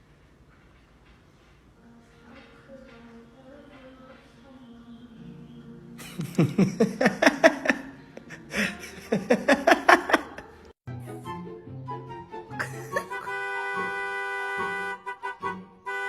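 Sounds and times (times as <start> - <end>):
music: 1.8 - 16.0
person laughing: 6.0 - 10.6, 12.6 - 13.4.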